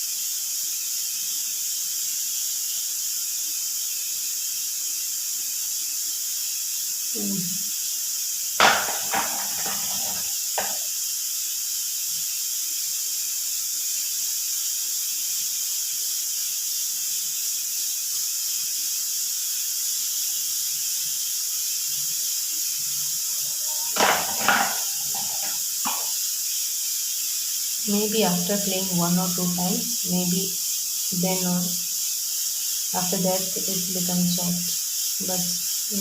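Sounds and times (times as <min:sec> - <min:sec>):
steady high hiss: 0:00.0 - 0:36.0
brush scraping a hard ball: 0:08.6 - 0:10.9, 0:23.6 - 0:26.2.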